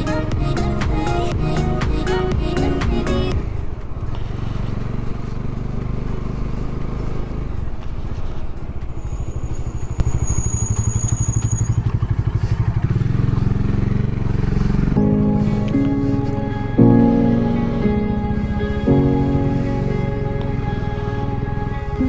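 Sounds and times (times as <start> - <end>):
motorcycle engine running: 0.0 - 16.8.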